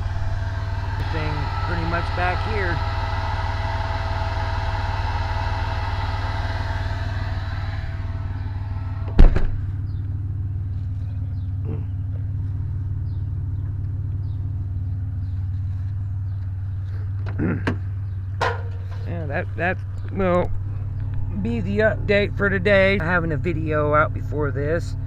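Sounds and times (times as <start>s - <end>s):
amplifier cooling fan hiss: 0.0s - 9.8s
car engine idling: 0.0s - 25.0s
loud thump: 9.0s - 9.7s.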